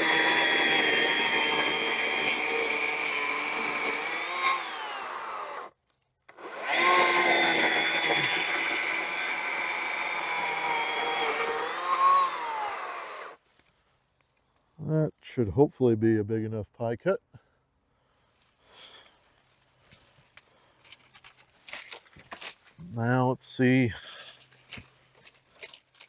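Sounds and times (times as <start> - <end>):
electric chainsaw cutting wood: 0.0 - 5.7, 6.3 - 13.4.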